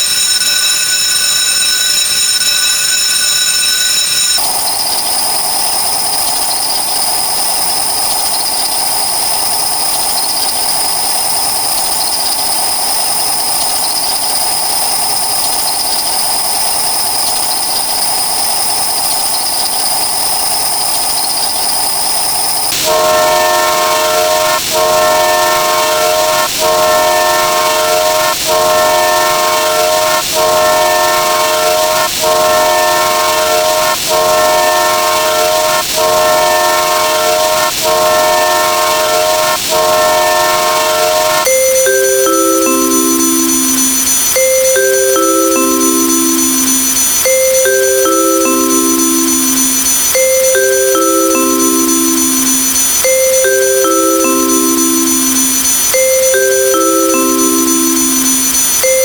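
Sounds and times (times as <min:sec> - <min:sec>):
steady hiss with high whine: 0:04.4 - 0:59.0
multi-tone horn blasts: 0:22.7 - 0:44.2.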